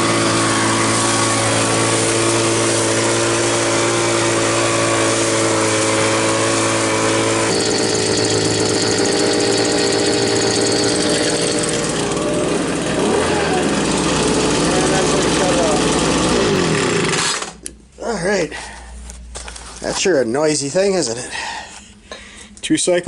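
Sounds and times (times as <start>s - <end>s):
leaf blower engine running: 0.0s - 17.6s.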